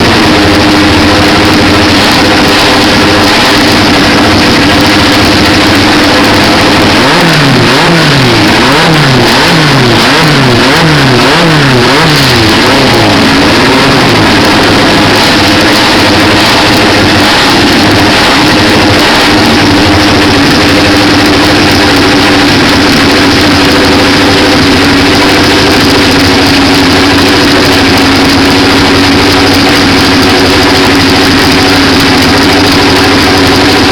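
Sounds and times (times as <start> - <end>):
car engine idling and revving: 0.0 - 33.9.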